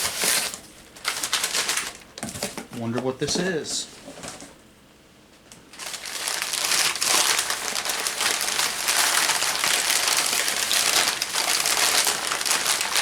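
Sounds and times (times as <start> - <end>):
packing material crinkling: 0.0 - 2.9, 5.5 - 13.0.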